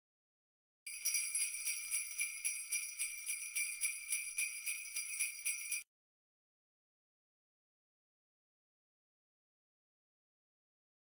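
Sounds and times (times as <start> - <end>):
jingle bells shaken: 0.9 - 5.9.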